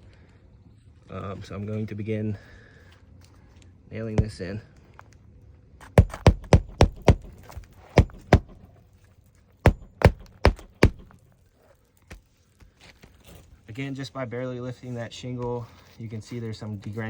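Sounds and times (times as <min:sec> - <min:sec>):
hammer striking roofing nails: 0:04.2 - 0:04.6, 0:06.0 - 0:08.7, 0:09.7 - 0:11.2.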